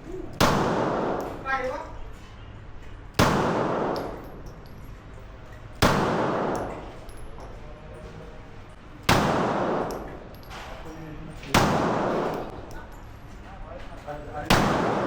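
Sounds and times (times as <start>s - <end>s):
echoing handgun shots: 0.4s - 1.4s, 3.2s - 4.3s, 5.8s - 6.9s, 9.1s - 10.2s, 11.5s - 12.6s, 14.5s - 15.0s.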